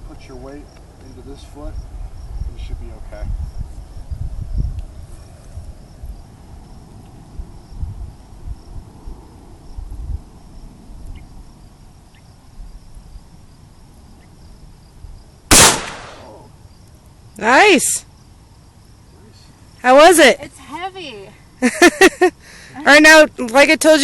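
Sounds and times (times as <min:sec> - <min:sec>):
wind rumble on microphone: 0:00.0 - 0:15.4
insects chirring: 0:00.0 - 0:24.0
rifle shot: 0:15.5 - 0:16.4.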